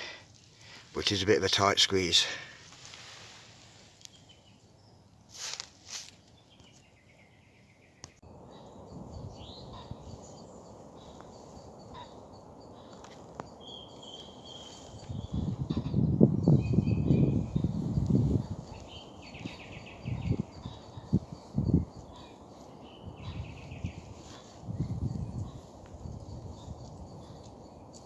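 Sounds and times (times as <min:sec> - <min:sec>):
small birds chirping: 0:03.8 - 0:28.0
rustling swishes: 0:05.3 - 0:06.2.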